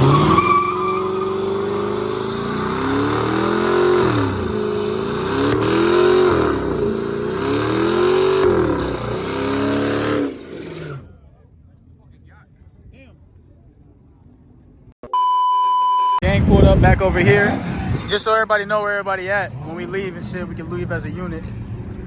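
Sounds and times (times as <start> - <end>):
car engine revving: 0.0 - 11.3, 16.2 - 22.0.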